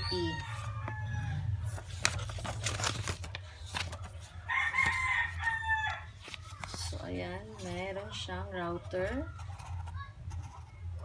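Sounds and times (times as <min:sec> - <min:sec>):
rooster crowing: 0:00.0 - 0:01.6, 0:04.3 - 0:06.1
packaging clicks and rustles: 0:01.7 - 0:07.8.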